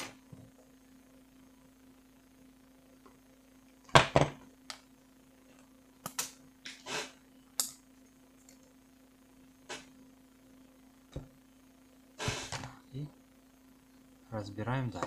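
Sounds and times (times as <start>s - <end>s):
faint low hum: 0.0s - 15.0s.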